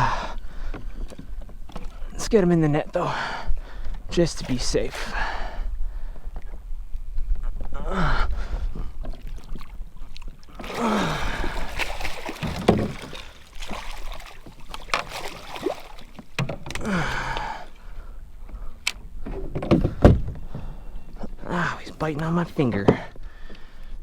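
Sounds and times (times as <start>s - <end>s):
water sloshing: 0.7s - 2.2s, 3.7s - 5.3s, 8.8s - 20.0s
knocks against a boat: 12.2s - 16.9s, 19.2s - 20.7s.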